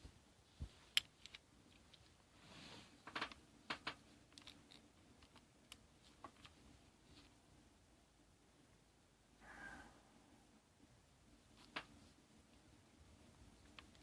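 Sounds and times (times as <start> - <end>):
battery rustling in hand: 0.6 - 7.4.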